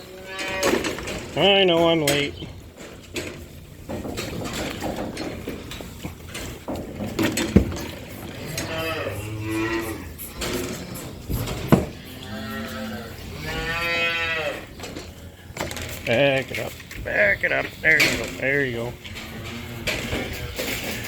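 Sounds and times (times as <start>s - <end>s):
calves bawling: 0.0s - 21.0s.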